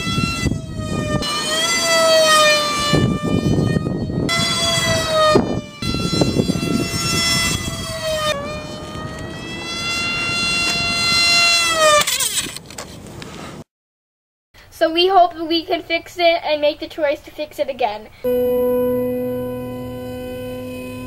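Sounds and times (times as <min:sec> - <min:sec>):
electric propeller whining: 0:00.0 - 0:12.8, 0:18.2 - 0:21.0
rushing wind: 0:00.0 - 0:13.6.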